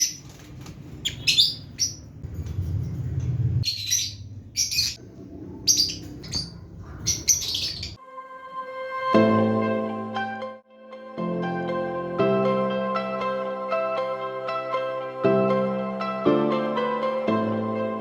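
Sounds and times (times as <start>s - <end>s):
lovebirds chirping: 0.0s - 0.4s, 1.0s - 2.2s, 3.6s - 8.0s
low steady rumble: 1.5s - 7.0s
soft music: 8.0s - 18.0s.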